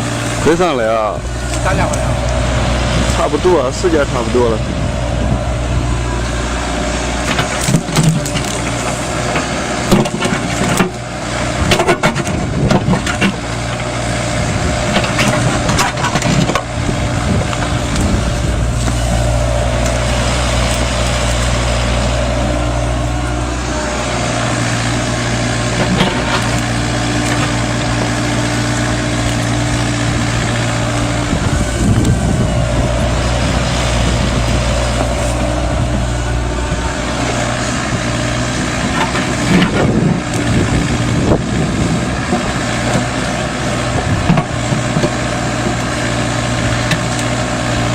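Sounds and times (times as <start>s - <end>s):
diesel excavator engine running: 0.0s - 47.9s
bucket knocking and scraping stones: 11.6s - 13.4s, 14.9s - 16.7s, 25.6s - 28.2s.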